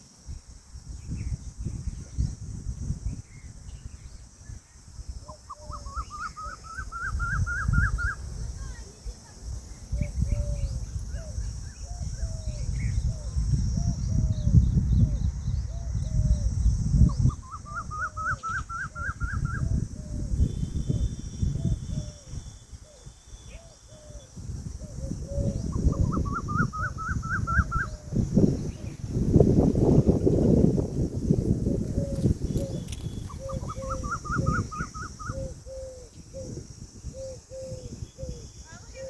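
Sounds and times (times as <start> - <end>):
peahen calling: 5.3 - 9.0, 17.2 - 29.1, 31.7 - 39.0.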